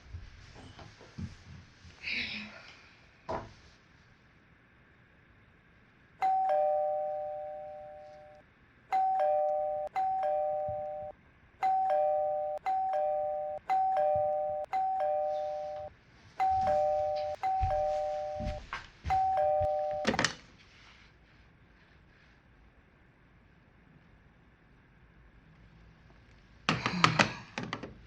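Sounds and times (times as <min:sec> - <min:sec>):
two-note doorbell chime: 0:06.2 - 0:20.2.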